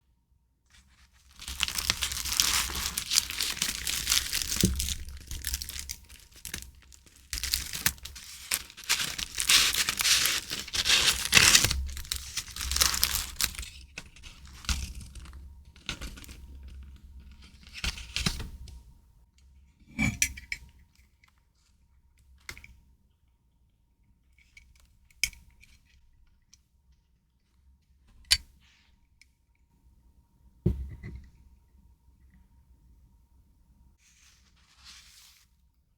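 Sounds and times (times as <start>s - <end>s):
packaging torn and crinkled: 1.3s - 16.4s.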